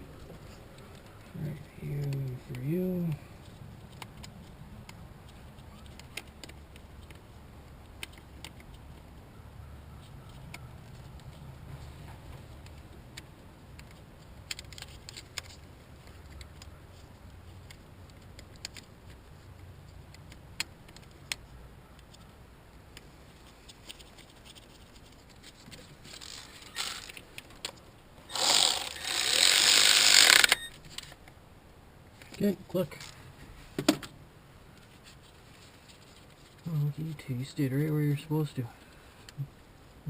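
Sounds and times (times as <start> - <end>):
loud rasping mechanical noise: 28.3 - 30.5.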